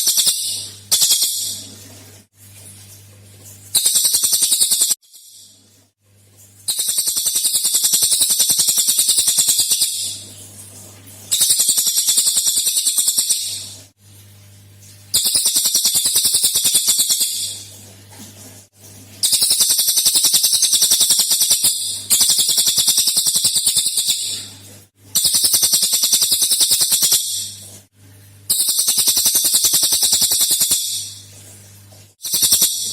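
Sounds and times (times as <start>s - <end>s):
bird rattling trill: 0.0s - 1.7s, 3.8s - 5.6s, 6.7s - 10.2s, 11.3s - 13.8s, 15.1s - 17.7s, 19.2s - 24.5s, 25.2s - 27.5s, 28.5s - 31.2s, 32.2s - 32.9s.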